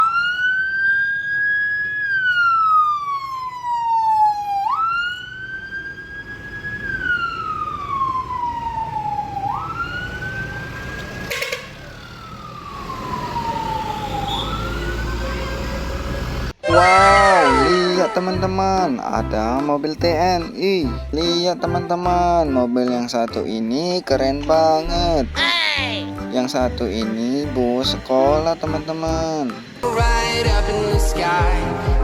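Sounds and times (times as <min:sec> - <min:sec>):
siren wailing: 0:00.0 - 0:19.0.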